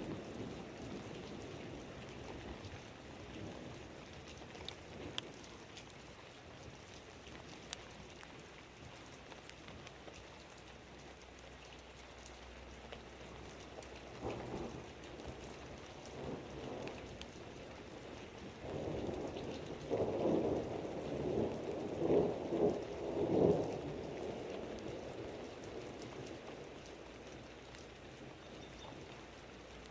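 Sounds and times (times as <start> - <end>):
steady rain: 0.0 - 29.9
thunder rumbling: 14.1 - 27.5.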